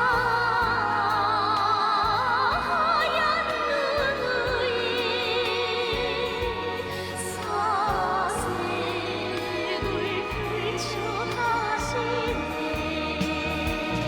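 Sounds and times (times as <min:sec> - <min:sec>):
bass line: 0:00.0 - 0:14.0
person singing with vibrato: 0:00.0 - 0:14.0.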